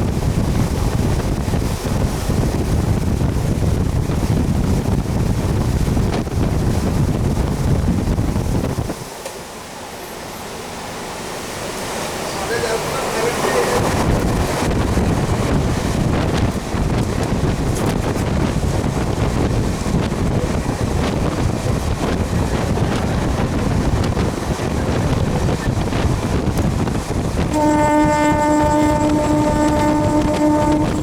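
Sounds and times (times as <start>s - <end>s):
train rumble: 0.0s - 31.0s
wind rushing past: 13.8s - 31.0s
train horn: 27.5s - 31.0s.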